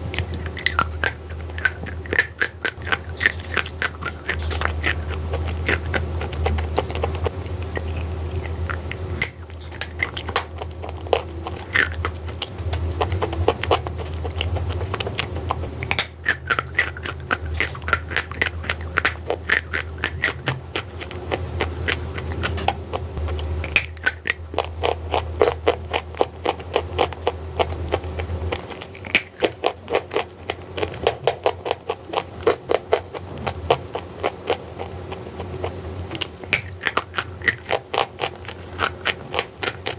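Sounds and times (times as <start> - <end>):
low hum: 0.0 - 31.4
person chewing crunchy food: 0.0 - 39.9.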